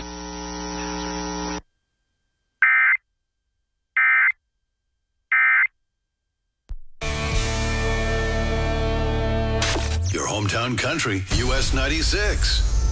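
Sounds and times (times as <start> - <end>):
buzzing hum: 0.0 - 2.6.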